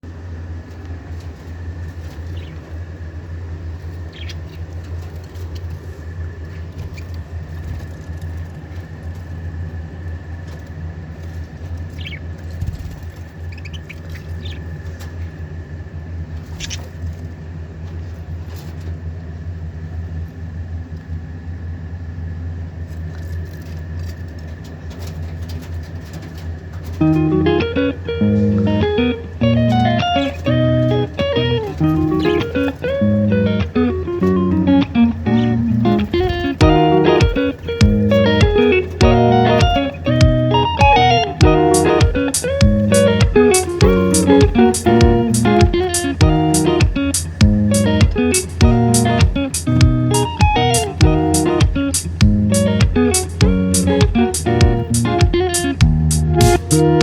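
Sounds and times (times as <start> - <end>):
steady low hum: 0.0 - 57.0
thin steady whine: 0.0 - 57.0
bird chirps: 2.2 - 2.7, 4.0 - 4.6, 11.9 - 14.9, 16.5 - 17.0, 27.0 - 57.0.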